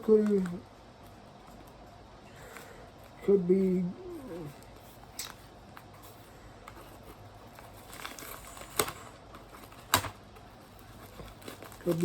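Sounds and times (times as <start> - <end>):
packaging rustling: 4.4 - 12.0.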